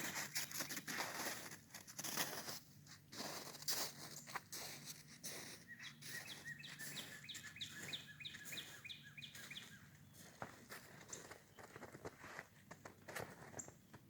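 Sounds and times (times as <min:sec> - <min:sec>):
footsteps crunching in snow: 0:00.0 - 0:13.8
bird chirping: 0:05.5 - 0:10.4.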